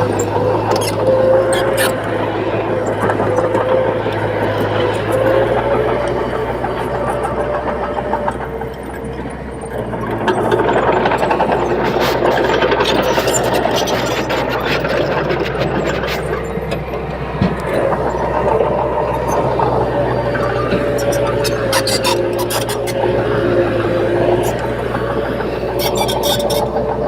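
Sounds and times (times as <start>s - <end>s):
bulldozer diesel engine running: 0.0s - 27.0s.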